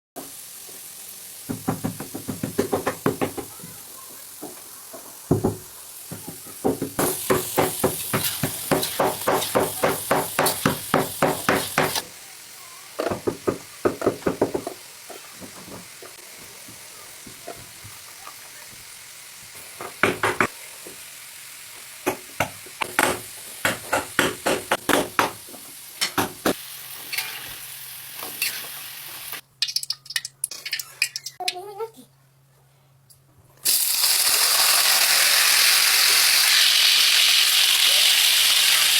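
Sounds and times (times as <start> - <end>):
food sizzling in oil: 0.2 - 31.4, 33.6 - 38.9
metal spatula scraping a pan: 27.1 - 27.6, 28.3 - 28.8.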